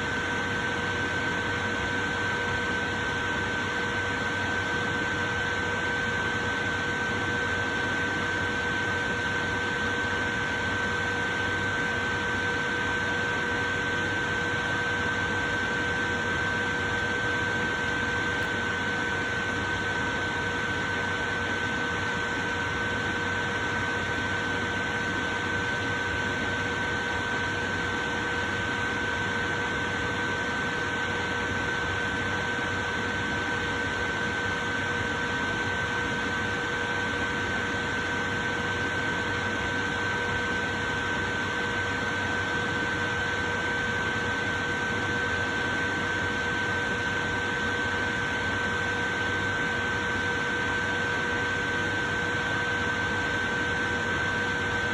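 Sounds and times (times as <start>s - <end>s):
electric fan running: 0.0s - 54.9s.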